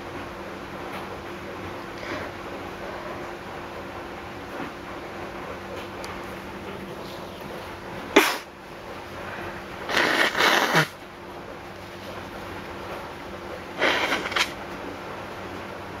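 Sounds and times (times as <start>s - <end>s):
person sneezing: 8.2s - 8.5s, 9.9s - 11.0s, 13.8s - 14.6s
breathy sniffs: 13.8s - 14.5s.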